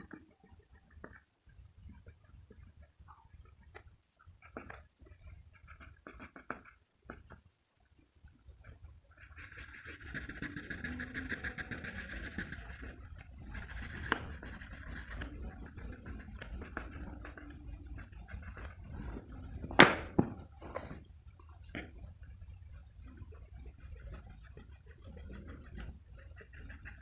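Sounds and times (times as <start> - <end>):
pencil scratching on paper: 4.4 - 7.4, 8.6 - 19.9, 22.7 - 27.0.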